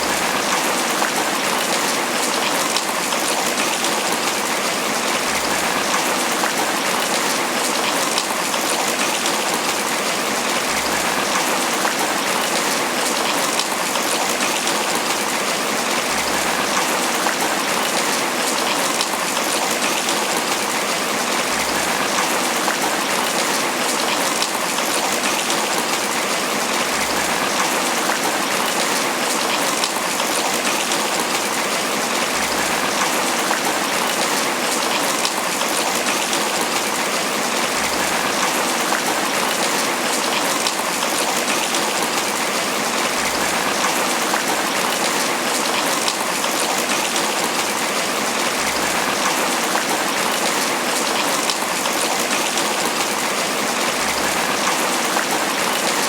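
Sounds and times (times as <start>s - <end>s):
rain pattering on leaves: 0.0s - 56.0s.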